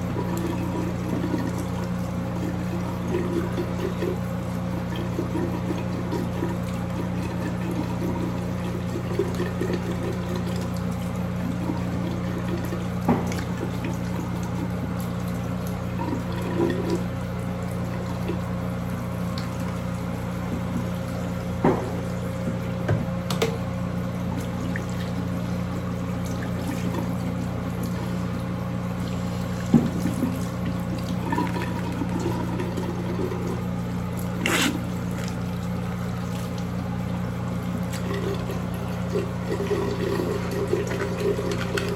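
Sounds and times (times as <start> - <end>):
water running: 0.0 - 41.9.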